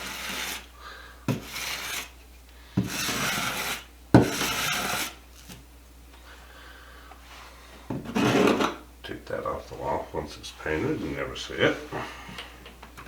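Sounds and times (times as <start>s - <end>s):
putty knife scraping on metal: 0.0s - 0.7s, 1.3s - 2.2s, 2.8s - 5.6s, 8.1s - 8.8s.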